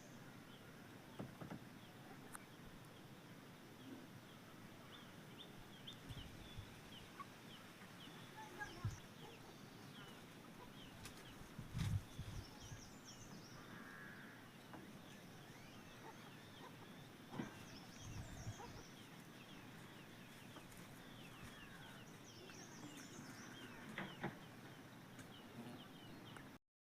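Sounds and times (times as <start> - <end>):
small birds chirping: 0.0 - 26.6.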